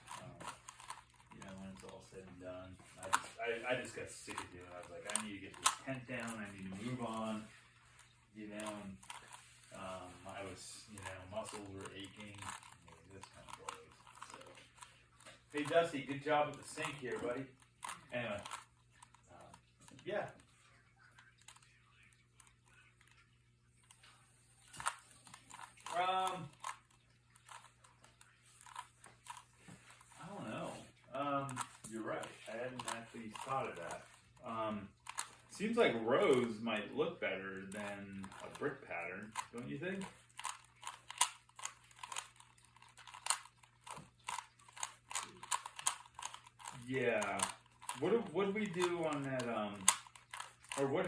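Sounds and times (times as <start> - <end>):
plastic puzzle cube clicks: 0.0 - 1.9, 4.2 - 9.4, 11.0 - 15.9, 16.5 - 19.2, 24.8 - 29.4, 31.5 - 34.2, 35.0 - 35.5, 37.8 - 38.6, 39.2 - 50.8.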